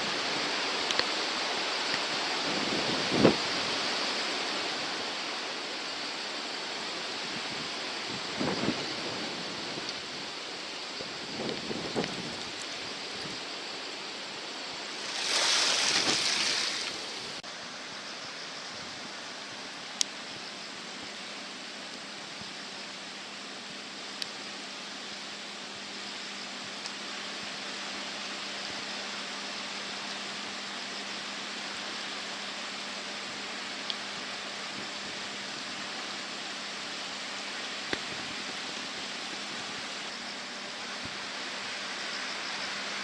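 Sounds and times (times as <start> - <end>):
river water rushing: 14.2 - 17.4
loud whoosh of water: 15.0 - 17.4.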